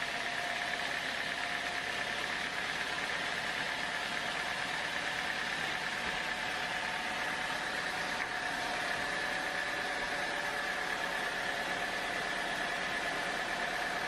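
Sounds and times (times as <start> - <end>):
sawmill machinery running: 0.0 - 14.0.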